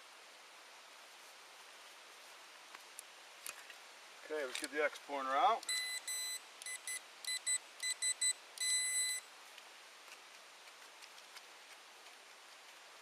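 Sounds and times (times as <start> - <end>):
metal detector probe beeping: 5.6 - 9.2.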